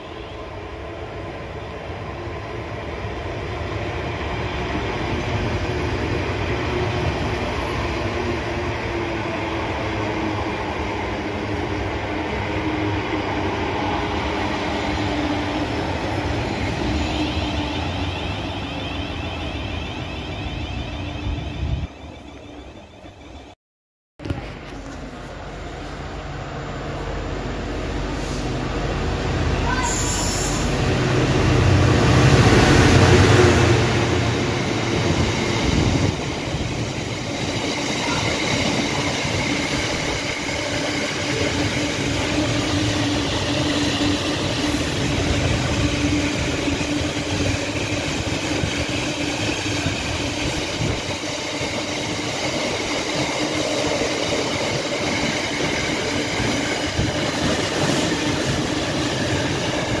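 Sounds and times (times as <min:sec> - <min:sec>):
train wheels on rail: 0:24.2 - 1:00.0.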